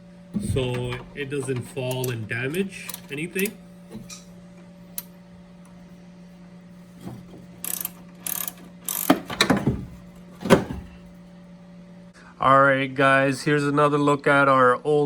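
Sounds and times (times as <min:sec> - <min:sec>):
ratchet rasping: 0:07.0 - 0:10.0.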